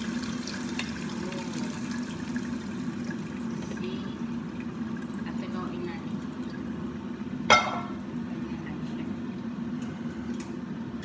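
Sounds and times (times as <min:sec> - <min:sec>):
kitchenware clink: 0:07.5 - 0:08.0.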